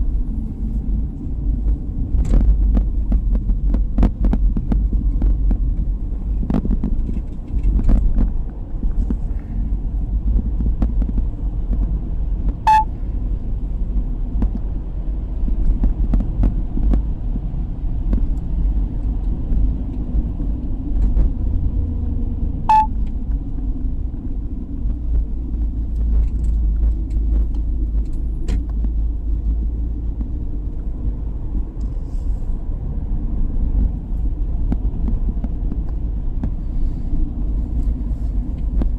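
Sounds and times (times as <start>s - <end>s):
car engine and road noise: 0.0s - 38.9s
short electronic beeps: 12.6s - 12.9s, 22.7s - 22.9s.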